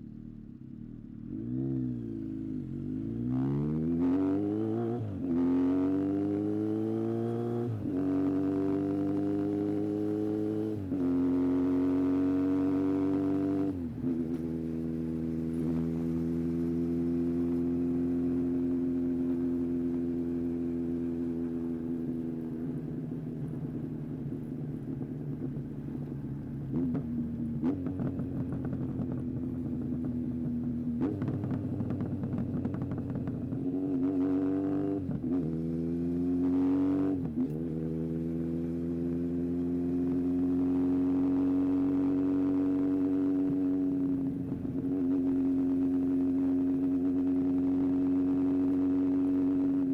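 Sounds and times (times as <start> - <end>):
motorcycle engine running: 7.8 - 36.2.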